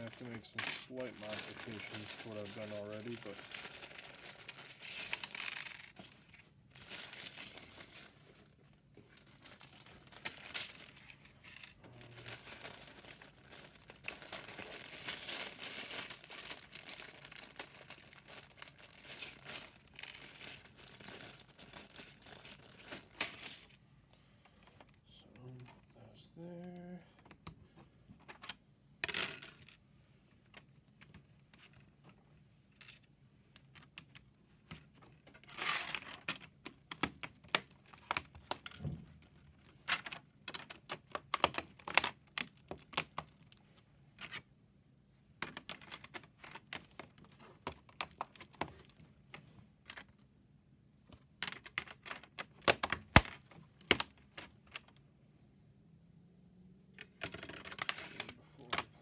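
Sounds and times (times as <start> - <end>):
loose plastic pieces rustling: 0.0 - 23.8.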